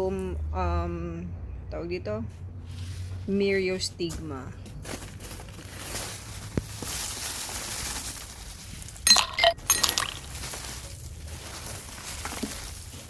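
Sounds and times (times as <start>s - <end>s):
hard objects clinking together: 9.0s - 10.8s.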